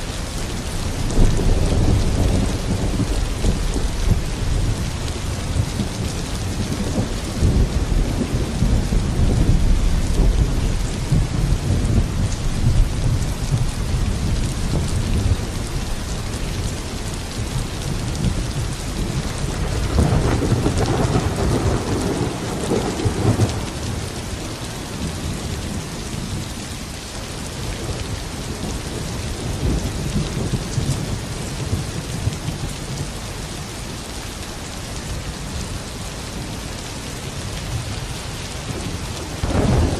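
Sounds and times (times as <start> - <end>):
steady rain: 0.0 - 39.9
rolling thunder: 0.6 - 26.4, 38.6 - 39.9.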